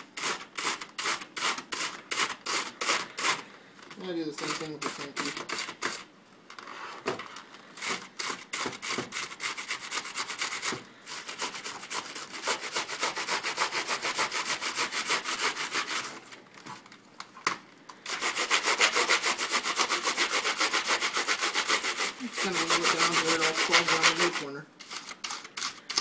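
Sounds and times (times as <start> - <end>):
brush scrubbing keyboard keys: 18.1 - 25.0.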